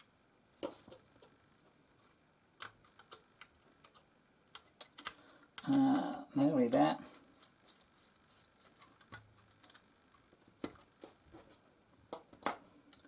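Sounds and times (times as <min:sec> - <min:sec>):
small plastic parts clicking: 0:02.0 - 0:06.1, 0:07.3 - 0:11.2.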